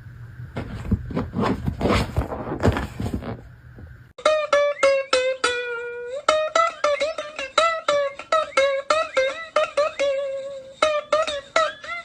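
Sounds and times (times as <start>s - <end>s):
plucked string instrument melody: 4.2s - 12.0s.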